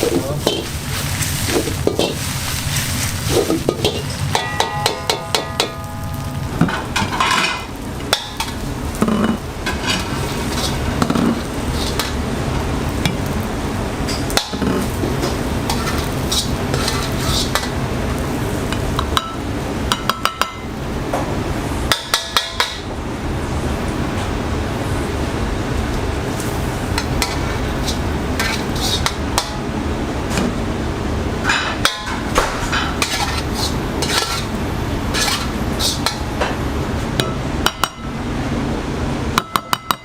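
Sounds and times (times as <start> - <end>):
metal spatula scraping pan: 0.0 - 6.2, 9.1 - 12.1, 15.7 - 17.7, 27.0 - 29.2, 32.9 - 36.3
rice sizzling in a pan: 0.0 - 40.0.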